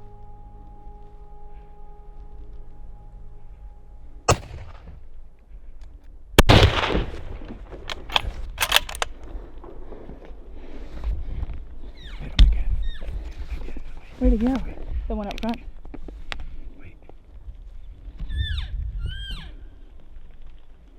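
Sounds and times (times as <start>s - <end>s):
rifle shots with rolling echo: 4.3s - 5.3s, 6.4s - 10.0s
sharp clicks: 7.9s - 9.2s.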